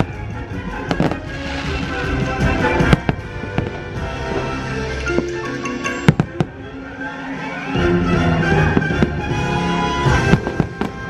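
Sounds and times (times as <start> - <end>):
firework bangs: 0.0 - 5.4, 6.0 - 6.7, 8.2 - 11.0
loud orchestral music: 0.0 - 11.0.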